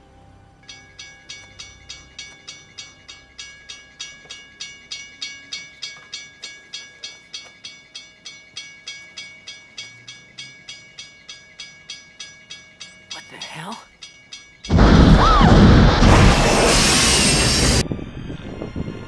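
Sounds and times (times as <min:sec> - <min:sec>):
railroad crossing bell ringing: 0:00.6 - 0:15.3.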